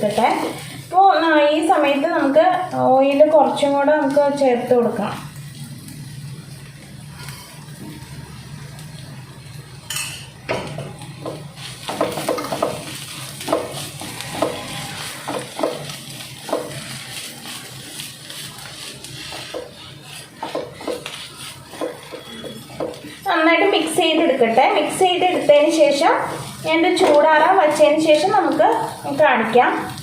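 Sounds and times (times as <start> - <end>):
oil sizzling: 0.0 - 30.0
spoon scraping a pan: 11.3 - 28.9.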